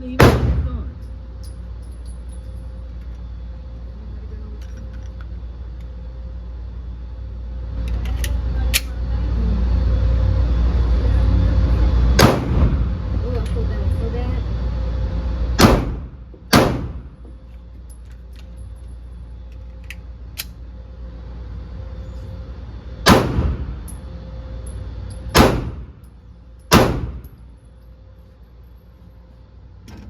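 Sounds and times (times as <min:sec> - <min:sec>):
pistol shots: 0:12.2 - 0:12.8, 0:15.6 - 0:17.1, 0:23.1 - 0:23.7, 0:25.4 - 0:25.9, 0:26.7 - 0:27.3.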